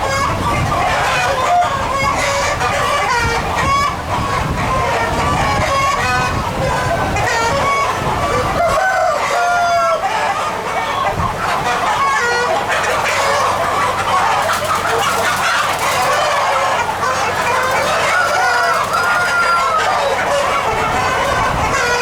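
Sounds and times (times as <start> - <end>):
chickens clucking: 0.0 - 22.0
roosters crowing: 0.0 - 22.0.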